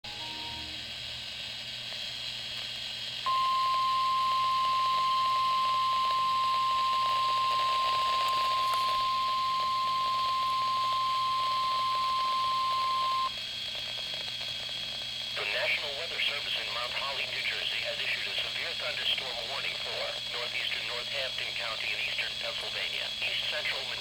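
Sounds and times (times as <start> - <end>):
radio hiss: 0.1 - 13.3, 13.9 - 24.0
steady high warning beep: 3.2 - 13.3.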